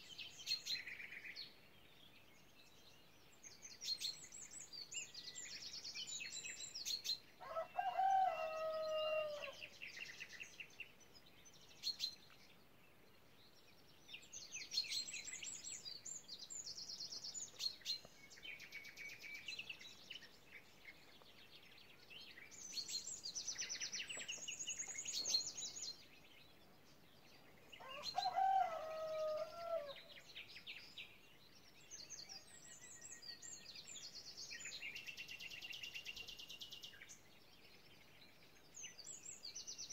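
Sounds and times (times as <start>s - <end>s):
songbirds singing: 0.0s - 39.9s
rooster crowing: 7.4s - 9.6s, 27.8s - 30.0s.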